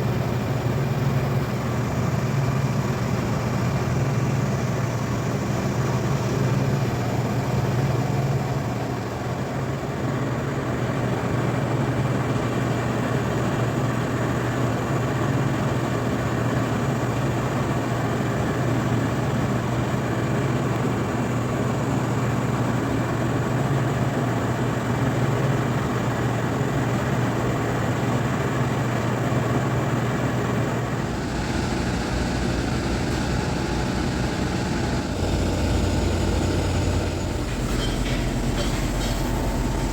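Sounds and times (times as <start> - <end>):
machine humming: 30.9 - 39.9.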